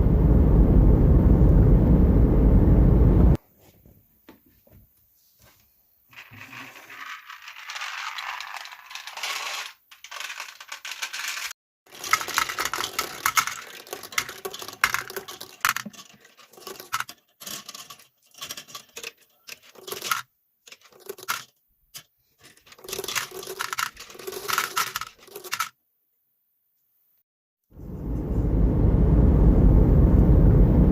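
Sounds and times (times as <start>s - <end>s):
marbles rolling down wooden run: 6.1s - 21.5s, 22.4s - 25.8s.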